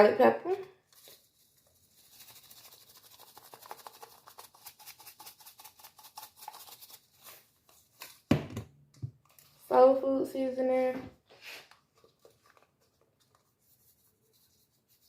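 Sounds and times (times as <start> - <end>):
seasoning shaker rattling: 2.0 - 7.0.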